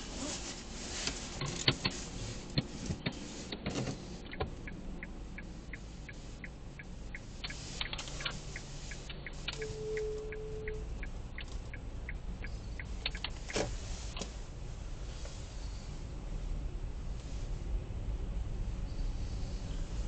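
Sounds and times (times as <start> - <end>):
regular ticking: 4.1 - 13.6
car squeak: 9.4 - 10.8.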